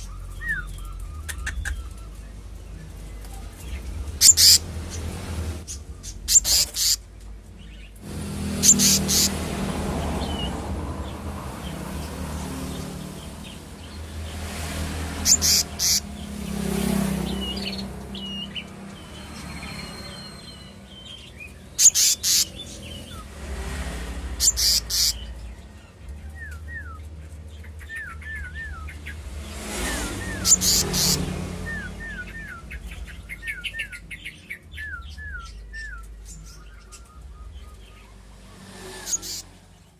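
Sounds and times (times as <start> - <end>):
bird whistling: 0.0 - 2.4, 4.2 - 4.6, 5.8 - 7.0, 8.5 - 9.4, 15.2 - 16.1, 17.4 - 23.3, 24.4 - 25.3, 26.2 - 27.1, 27.8 - 38.1, 39.1 - 39.4
high bird chirps: 0.0 - 23.4, 24.3 - 38.2, 38.8 - 39.7.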